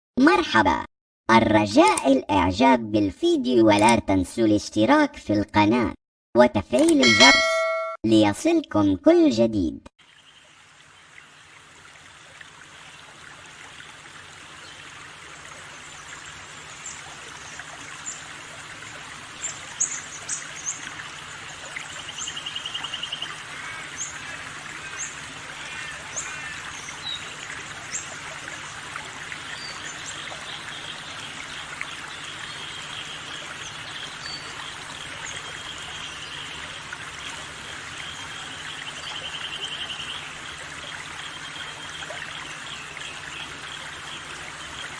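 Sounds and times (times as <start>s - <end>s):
bird chirps and trills: 7.0s - 8.0s
water trickling: 10.0s - 44.9s.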